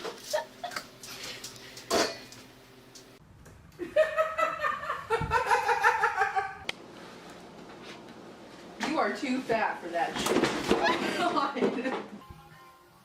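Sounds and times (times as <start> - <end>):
person laughing: 0.2 - 0.9, 3.8 - 6.7, 10.8 - 11.6.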